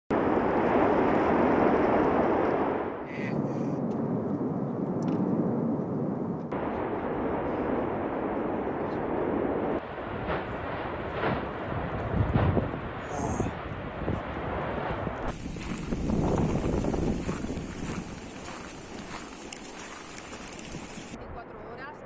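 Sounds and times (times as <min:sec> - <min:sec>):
volcano roaring: 0:00.2 - 0:05.7, 0:06.5 - 0:21.2.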